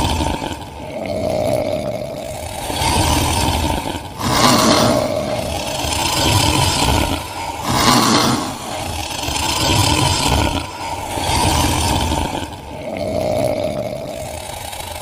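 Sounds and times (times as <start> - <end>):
noisy rumble: 0.0 - 15.0
hiss: 2.6 - 12.5.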